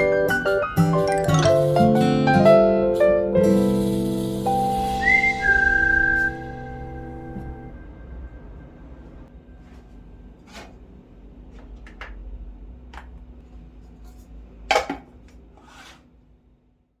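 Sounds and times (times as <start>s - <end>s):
low steady hum: 5.9s - 15.1s.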